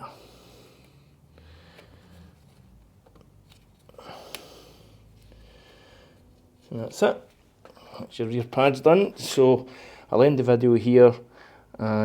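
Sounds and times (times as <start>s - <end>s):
faint handling noises: 1.7s - 5.5s.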